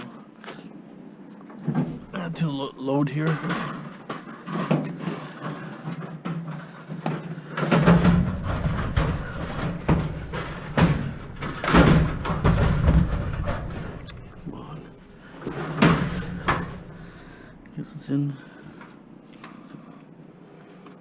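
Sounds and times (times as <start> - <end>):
scrap metal knocks and clunks: 1.6 - 17.7
low rumbling scrape: 8.2 - 18.1.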